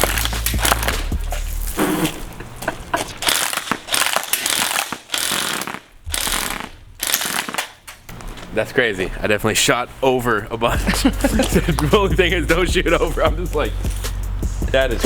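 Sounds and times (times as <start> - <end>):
airsoft minigun firing bursts: 3.2 - 7.9.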